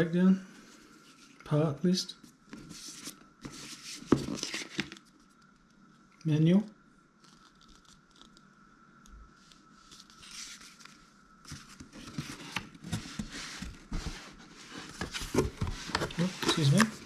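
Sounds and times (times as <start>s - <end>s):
paper and plastic crinkling: 2.6s - 5.4s, 14.8s - 17.0s.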